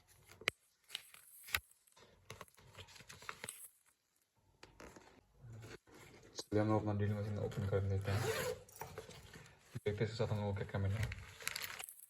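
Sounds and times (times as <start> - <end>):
paper rustling: 0.0 - 3.9, 10.6 - 12.0.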